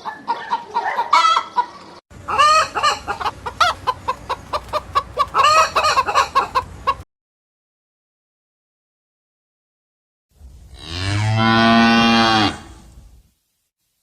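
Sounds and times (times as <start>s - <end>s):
chickens clucking: 0.0s - 7.0s
chickens squawking: 0.0s - 7.0s.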